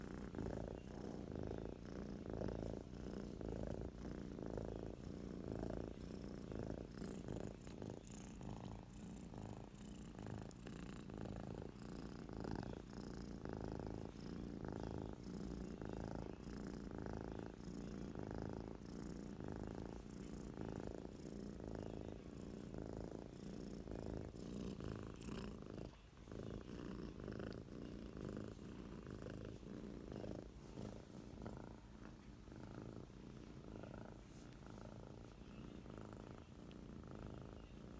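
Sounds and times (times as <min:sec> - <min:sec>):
cat snoring: 0:00.0 - 0:37.9.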